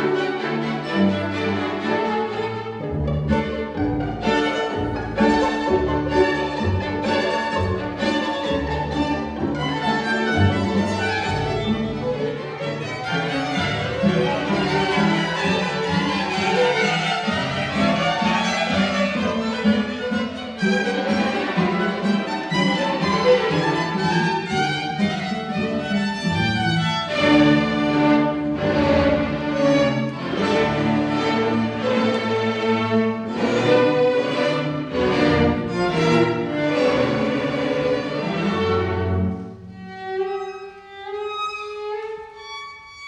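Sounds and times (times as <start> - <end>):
string orchestra playing classical music: 0.0 - 43.0.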